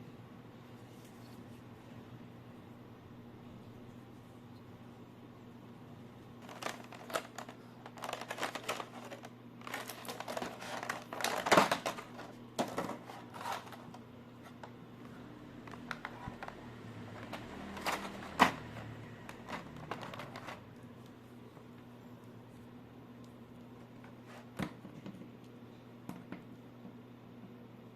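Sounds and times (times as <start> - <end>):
faint steady hum: 0.0 - 27.9
packaging clicks and crinkles: 6.4 - 14.0, 15.7 - 20.8.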